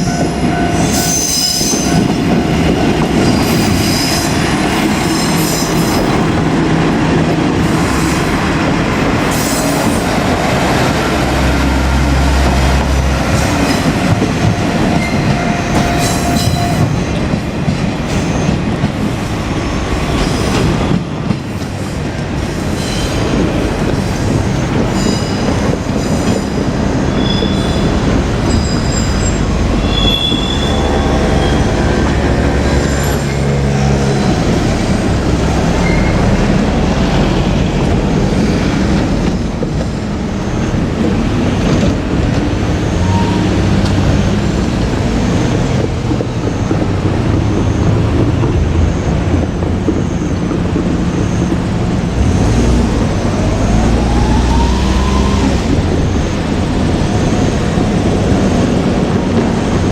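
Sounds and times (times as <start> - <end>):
train wheels squealing: 0.0 - 2.3, 3.2 - 6.4, 13.4 - 17.2, 22.6 - 23.4, 24.9 - 34.6, 35.6 - 36.5, 42.8 - 43.8, 53.5 - 58.8
train rumbling on rails: 0.0 - 59.9.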